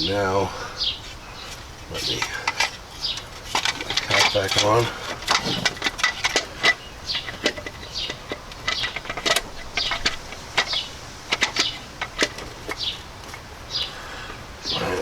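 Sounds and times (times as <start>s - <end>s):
plastic cap knocking and scraping: 2.0s - 13.4s.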